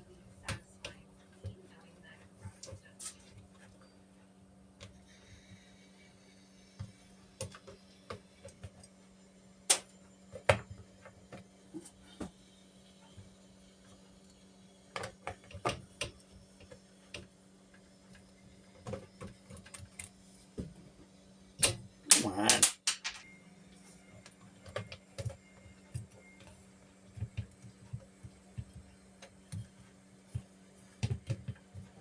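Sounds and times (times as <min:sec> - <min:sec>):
clicks and knocks of parts handled: 0:21.6 - 0:23.3.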